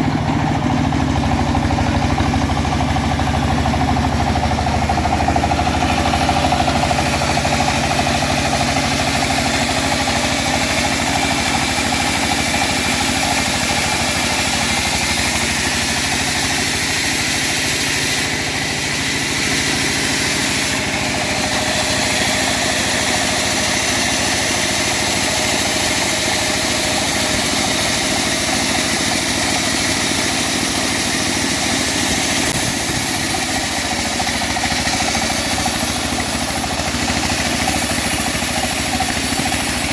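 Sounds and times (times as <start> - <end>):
sawmill engine running: 0.0 - 39.9
saw cutting hiss: 1.8 - 39.9.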